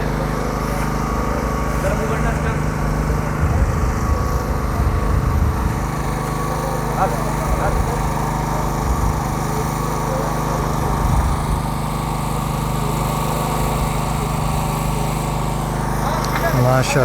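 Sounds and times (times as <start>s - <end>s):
small engine droning: 0.0s - 17.0s.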